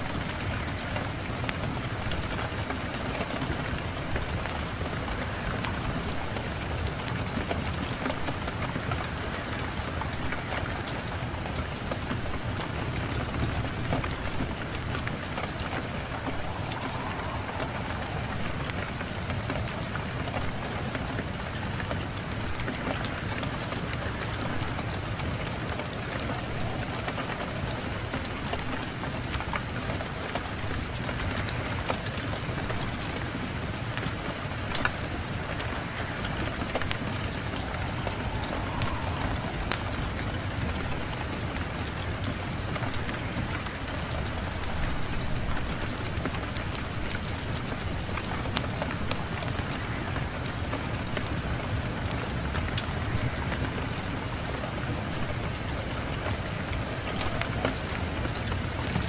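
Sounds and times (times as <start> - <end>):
fire crackling and popping: 0.0 - 54.6, 55.2 - 59.0
wind rushing: 0.1 - 29.1, 34.1 - 43.5.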